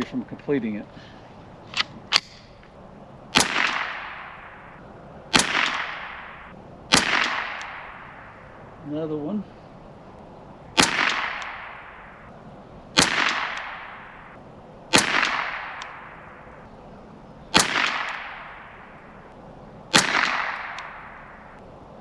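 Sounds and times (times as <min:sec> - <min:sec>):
rifle shots: 0:03.3 - 0:08.8, 0:10.7 - 0:16.8, 0:17.5 - 0:21.6.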